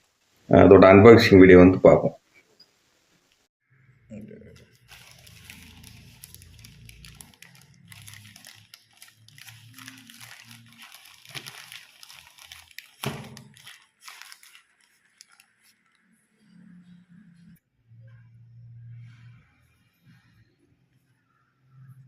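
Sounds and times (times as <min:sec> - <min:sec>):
packaging crinkling: 0:04.5 - 0:16.0.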